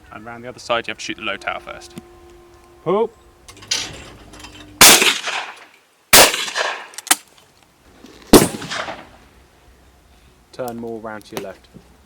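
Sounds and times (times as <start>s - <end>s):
shotgun blasts: 4.8s - 7.2s, 8.3s - 9.2s.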